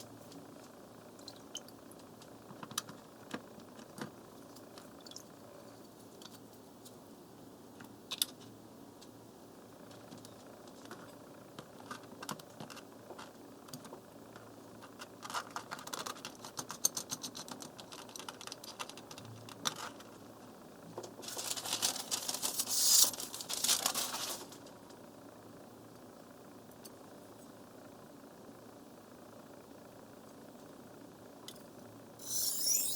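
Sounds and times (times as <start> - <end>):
knife scraping on whetstone: 32.2 - 32.9.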